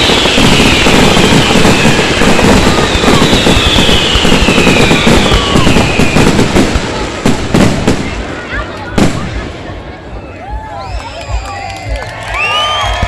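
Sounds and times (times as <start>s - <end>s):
falling firework whistles: 0.0s - 6.6s
fireworks bursting and crackling: 0.0s - 13.0s.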